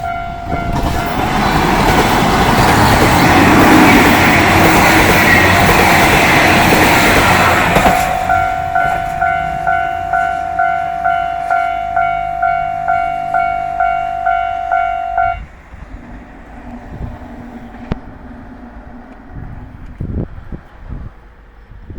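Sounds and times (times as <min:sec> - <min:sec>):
level-crossing warning bell: 0:00.0 - 0:19.6
low rumble and hum: 0:15.4 - 0:21.2.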